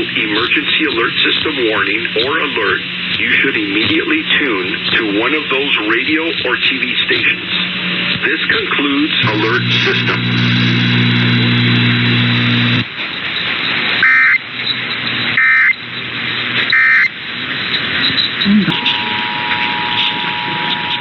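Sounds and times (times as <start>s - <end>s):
radio static: 0.0s - 13.0s, 14.0s - 14.4s, 15.2s - 15.8s, 16.6s - 17.2s, 18.0s - 21.0s
low steady hum: 0.0s - 13.2s, 14.0s - 21.0s
digital data tone bursts: 9.2s - 21.0s
two-tone alert signal: 14.0s - 14.4s, 15.4s - 15.8s, 16.7s - 17.1s, 18.4s - 21.0s.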